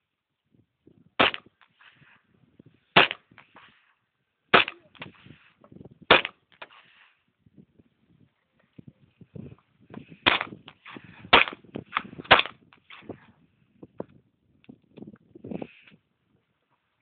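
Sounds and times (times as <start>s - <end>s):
pistol shots: 1.2s - 1.5s, 3.0s - 3.3s, 4.5s - 5.0s, 6.1s - 6.4s, 10.2s - 10.6s, 11.3s - 12.6s.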